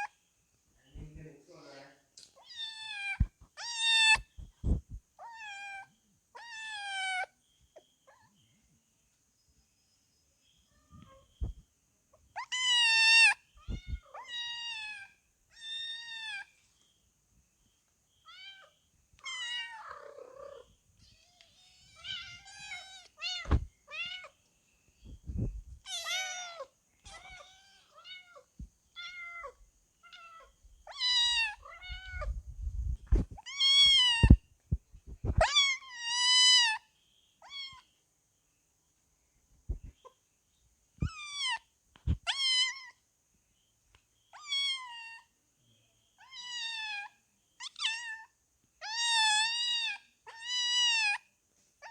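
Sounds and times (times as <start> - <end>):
kittens meowing: 2.4 - 7.4, 12.3 - 16.5, 18.3 - 24.4, 25.8 - 32.5, 33.2 - 34.5, 35.2 - 36.8, 37.4 - 37.9, 41.0 - 43.0, 44.3 - 45.3, 46.2 - 51.2
low thumps: 23.4 - 23.7.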